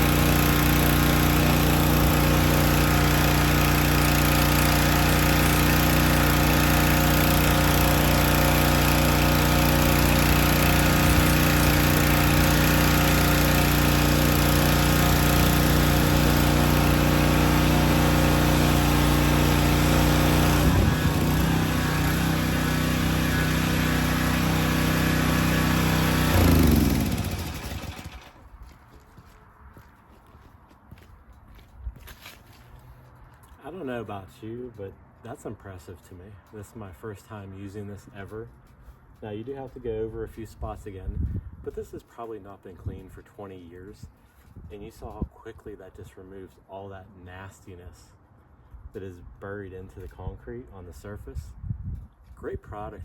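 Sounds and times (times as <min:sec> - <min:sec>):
pressure washer engine running: 0:00.0 - 0:28.4.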